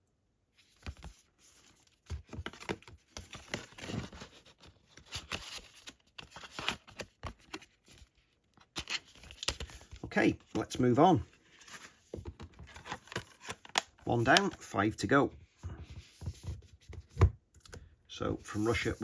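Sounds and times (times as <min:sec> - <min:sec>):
paper and card rustling: 0:00.6 - 0:14.9, 0:15.8 - 0:17.3, 0:18.4 - 0:19.0
box handling clicks and scrapes: 0:11.6 - 0:14.6.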